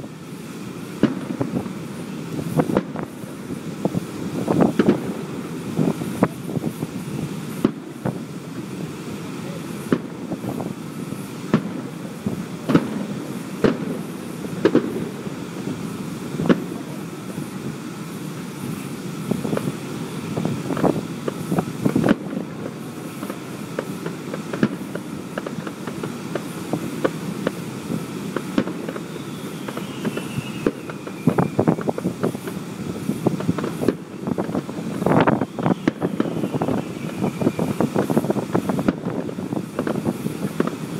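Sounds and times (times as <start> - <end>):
fireworks bangs: 0.0 - 40.9
high falling whistle: 28.9 - 32.0, 35.0 - 38.0.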